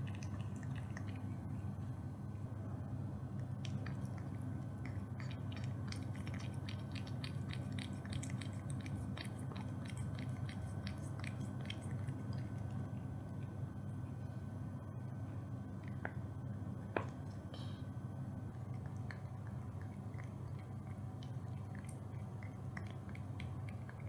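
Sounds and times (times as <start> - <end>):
cat chewing crunchy food: 0.0 - 2.4, 3.3 - 13.6, 18.4 - 24.0.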